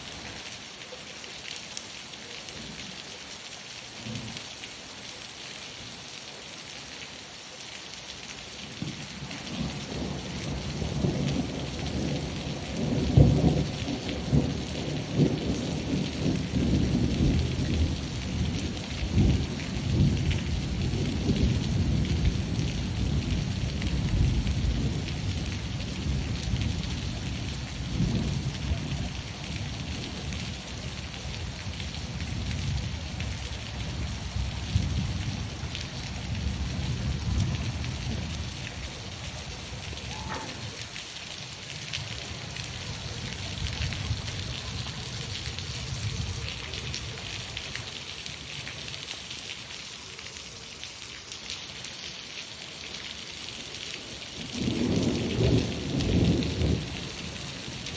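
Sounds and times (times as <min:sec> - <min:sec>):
steady rain falling: 0:00.0 - 0:57.9
thunder rumbling: 0:08.8 - 0:33.5, 0:34.1 - 0:41.0, 0:41.8 - 0:47.7, 0:54.4 - 0:57.9.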